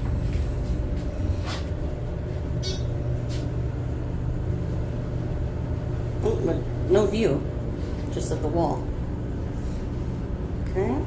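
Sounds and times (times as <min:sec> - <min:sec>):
elevator low rumble: 0:00.0 - 0:11.0
faint steady hum: 0:00.0 - 0:11.0.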